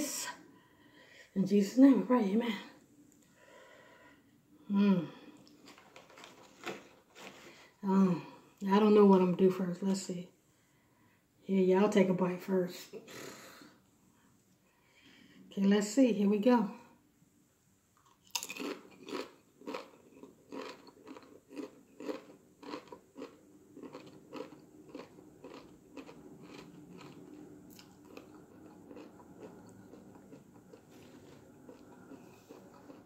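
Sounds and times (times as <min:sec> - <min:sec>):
biting into tortilla chips: 0:18.0 - 0:33.0
crunchy chewing: 0:18.0 - 0:33.0.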